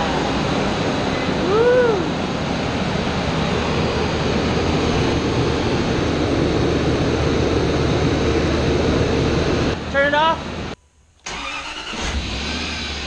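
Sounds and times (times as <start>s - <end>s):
car engine running: 0.0s - 10.8s
engine cranking and firing: 11.2s - 13.0s.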